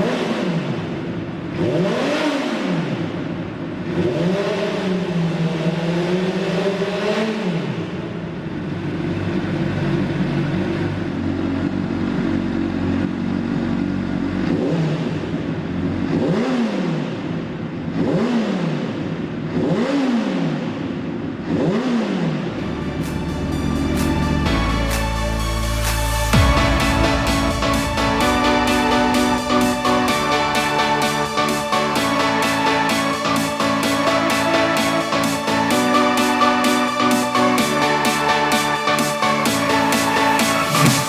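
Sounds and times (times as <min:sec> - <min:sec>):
motorcycle engine revving: 0:00.0 - 0:07.5, 0:11.2 - 0:23.1.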